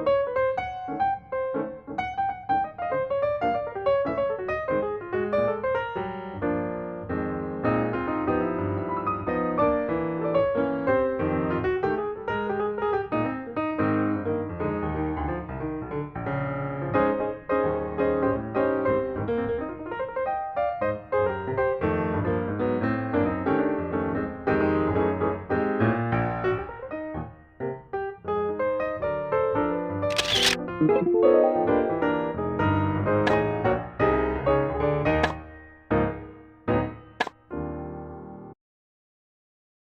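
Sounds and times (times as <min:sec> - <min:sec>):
piano music: 0:30.6 - 0:37.0.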